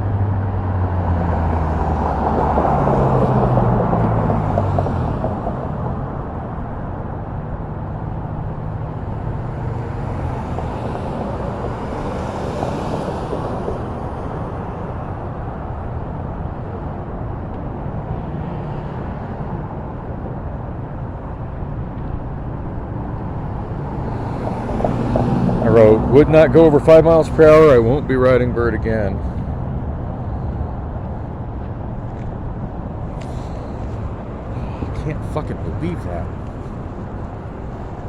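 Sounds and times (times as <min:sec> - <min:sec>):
road traffic noise: 0:00.0 - 0:38.0.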